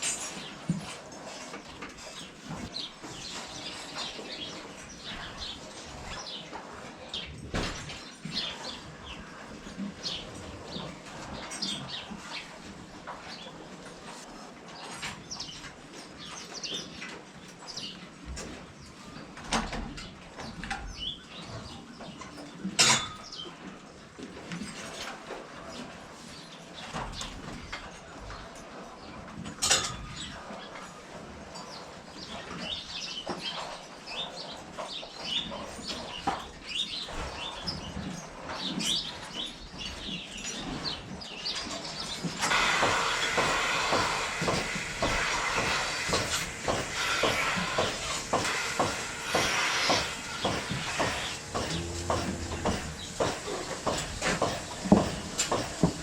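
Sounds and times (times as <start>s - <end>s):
sharp knocks: 42.4s - 56.0s
steady hiss: 42.4s - 56.0s.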